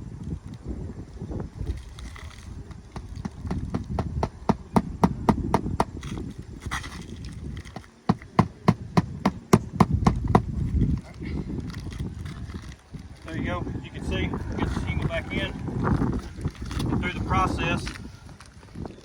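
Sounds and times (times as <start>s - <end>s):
hammer tapping on roof shingle: 2.7s - 6.0s, 7.7s - 10.5s.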